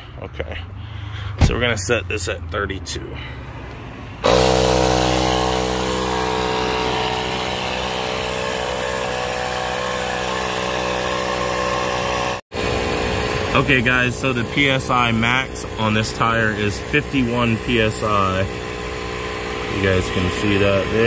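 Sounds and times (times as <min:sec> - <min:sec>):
air compressor running: 0:04.2 - 0:21.0.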